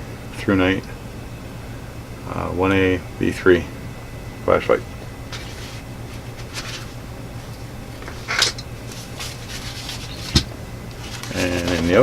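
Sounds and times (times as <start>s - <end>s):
steady low hum: 0.0s - 12.0s
gear rustling and scraping: 5.0s - 12.0s.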